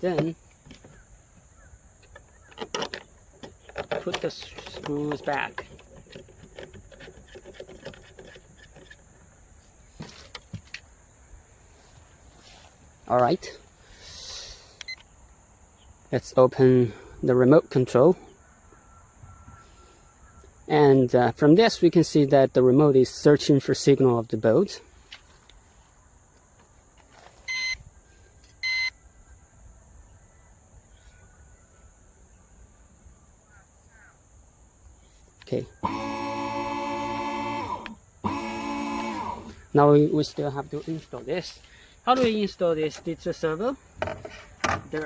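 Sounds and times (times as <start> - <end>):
short electronic beeps: 27.5 - 27.8, 28.6 - 29.0.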